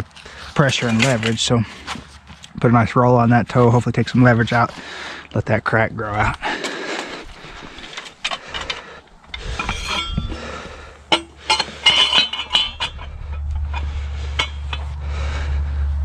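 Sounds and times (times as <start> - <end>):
low steady hum: 1.0 - 16.0
metal tools clinking and knocking: 6.4 - 15.0.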